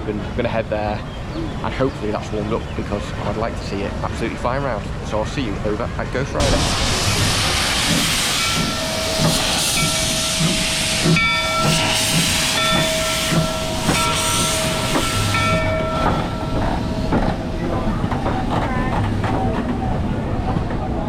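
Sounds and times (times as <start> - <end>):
loud steam hiss: 6.4 - 20.4.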